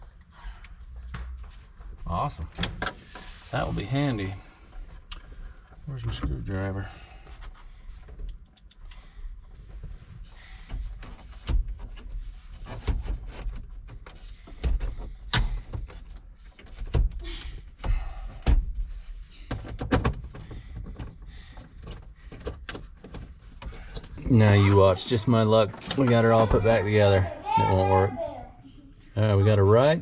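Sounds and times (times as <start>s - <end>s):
dashboard parts knocking and clunking: 10.6s - 27.0s.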